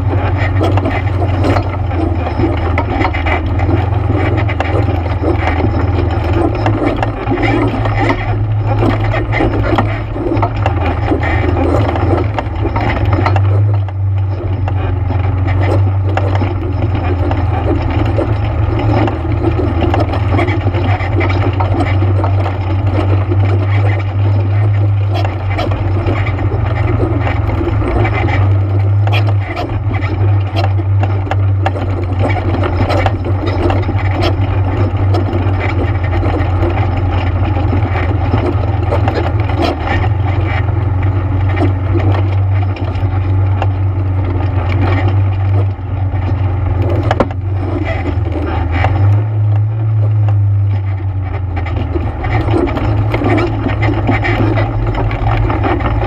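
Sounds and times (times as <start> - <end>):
atv engine running: 0.0 - 56.0
knocks and rattles: 0.0 - 56.0.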